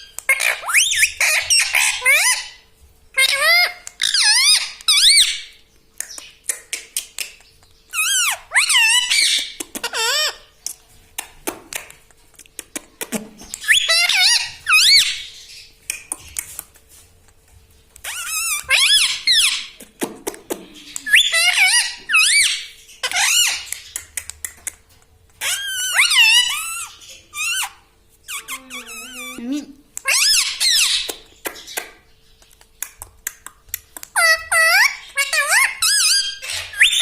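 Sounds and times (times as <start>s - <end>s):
parrot warbling squawks: 3.2s - 5.5s, 18.1s - 19.8s, 21.0s - 23.7s, 25.4s - 31.1s.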